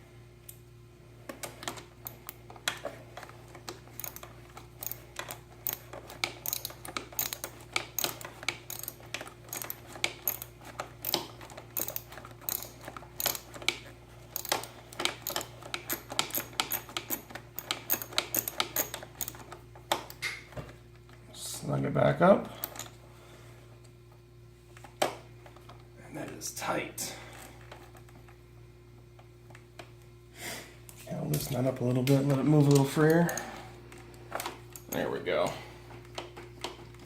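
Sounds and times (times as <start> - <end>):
ratchet clicking: 4.0 - 13.6, 14.4 - 19.4.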